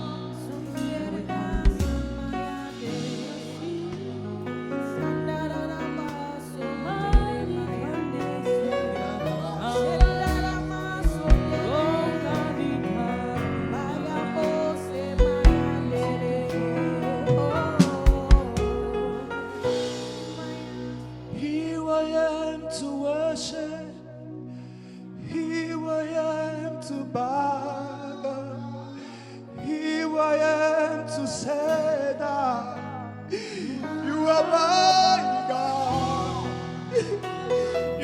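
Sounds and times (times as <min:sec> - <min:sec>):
sustained instrumental chords: 0:00.0 - 0:22.0
voices singing gospel: 0:00.0 - 0:24.4, 0:25.2 - 0:38.0.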